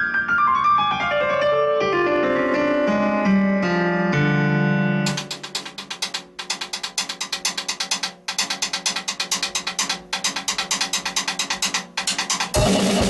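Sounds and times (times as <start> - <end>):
drum kit: 5.1 - 13.0
fast clicking percussion: 5.1 - 13.0.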